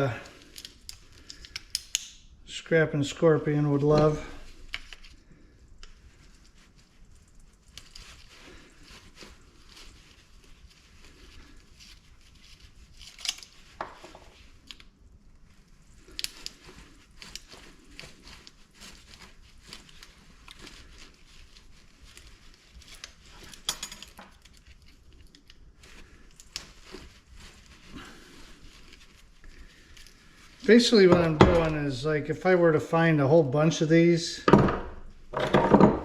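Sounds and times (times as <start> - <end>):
small metal parts clinking: 22.8 - 24.7.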